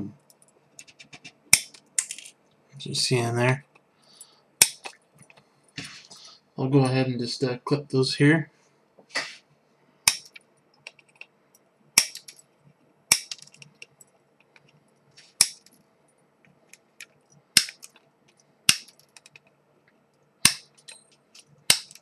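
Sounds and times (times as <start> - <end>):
wire cutters snipping: 12.0 - 12.4, 13.1 - 13.6, 15.2 - 15.7, 17.6 - 18.0, 20.4 - 21.0, 21.7 - 22.0.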